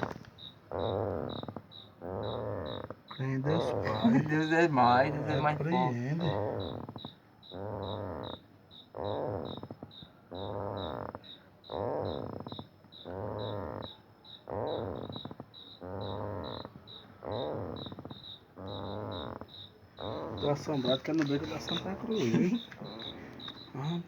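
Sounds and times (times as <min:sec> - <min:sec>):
crickets chirping: 0:00.0 - 0:24.0
rhythmic groaning from ground: 0:00.0 - 0:24.0.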